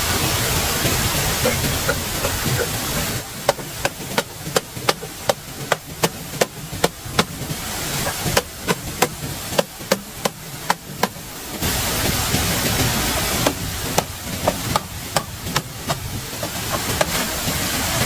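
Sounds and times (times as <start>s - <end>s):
steady rushing noise: 0.0s - 18.0s
tool striking wood: 3.3s - 11.3s, 13.3s - 17.4s.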